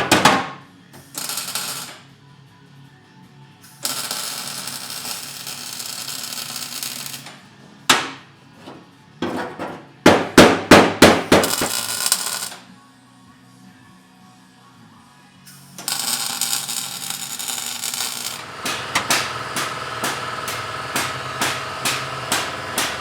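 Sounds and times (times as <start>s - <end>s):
background music: 0.0s - 23.0s
hammer striking metal: 9.3s - 12.6s, 15.8s - 23.0s.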